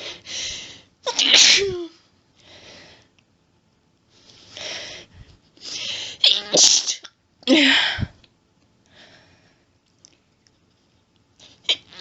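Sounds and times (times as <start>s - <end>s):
woman sneezing: 1.1s - 1.9s, 6.2s - 7.8s
woman breathing in: 4.5s - 6.2s, 8.8s - 9.7s.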